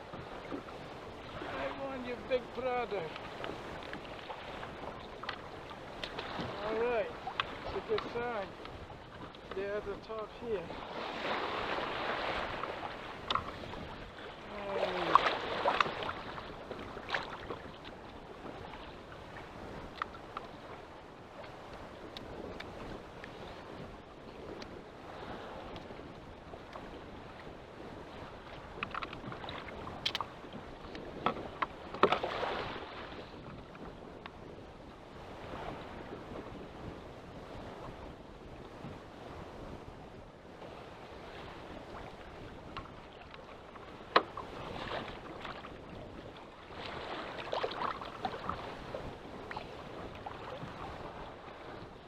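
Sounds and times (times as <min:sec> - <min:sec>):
waves washing against kayak: 0:00.0 - 0:52.0
wind: 0:00.0 - 0:52.0
splashes: 0:14.5 - 0:16.3.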